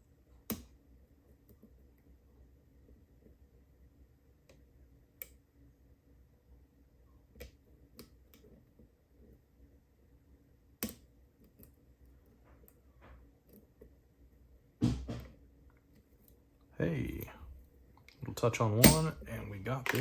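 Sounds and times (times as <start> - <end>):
lock pick clicking in padlock: 18.8 - 19.1.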